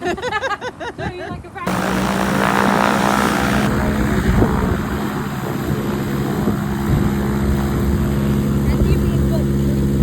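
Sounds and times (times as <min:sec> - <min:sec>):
propeller aircraft engine humming: 0:01.7 - 0:08.6.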